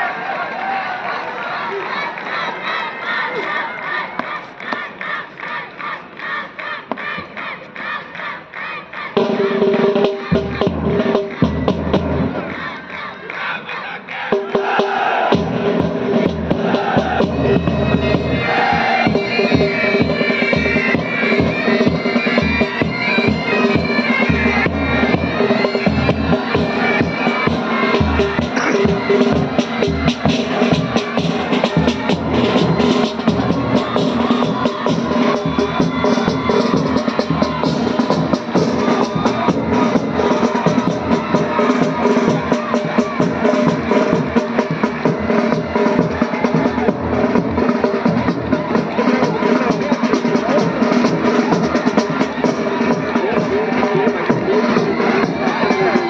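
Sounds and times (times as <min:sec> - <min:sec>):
band drums beating: 0:09.2 - 0:12.8, 0:14.1 - 0:56.0
bagpipes playing: 0:19.4 - 0:29.2.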